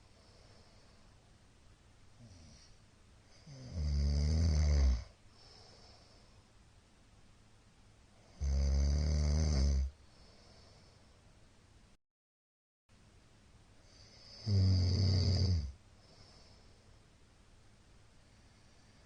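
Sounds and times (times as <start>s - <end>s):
soft breathing: 0.0s - 1.4s, 5.2s - 6.6s, 9.9s - 11.4s, 15.8s - 17.2s, 18.1s - 19.0s
man snoring: 2.2s - 2.7s, 3.3s - 5.2s, 8.2s - 10.0s, 14.0s - 15.8s.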